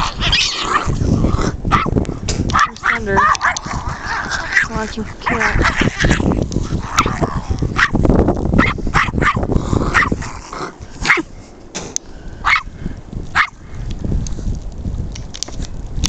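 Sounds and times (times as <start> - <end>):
wind buffeting microphone: 0.0 - 16.0
dog barking: 1.7 - 3.8, 7.8 - 8.0, 8.6 - 10.2, 12.4 - 12.7, 13.4 - 13.6.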